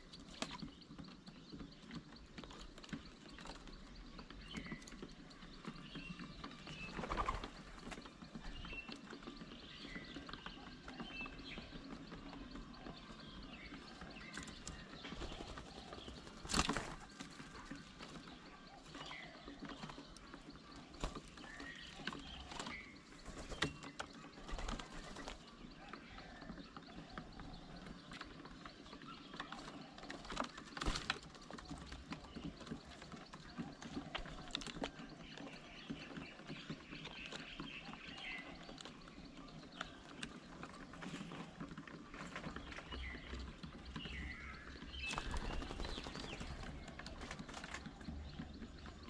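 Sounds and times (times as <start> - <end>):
birds chirping: 0.0 - 49.0
small taps and ticks: 0.0 - 49.0.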